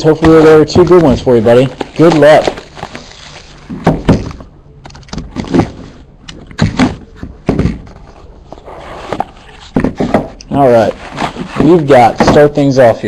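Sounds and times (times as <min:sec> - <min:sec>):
cardboard boxes thunking: 0:00.1 - 0:04.5, 0:05.1 - 0:08.1, 0:09.0 - 0:10.4, 0:11.0 - 0:12.6.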